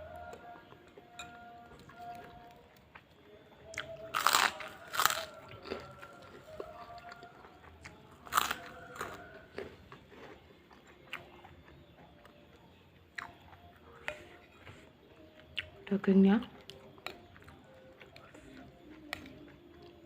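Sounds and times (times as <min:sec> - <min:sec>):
chewing: 0:00.0 - 0:15.9, 0:16.5 - 0:20.0
crisp food crunched in bites: 0:04.2 - 0:05.8.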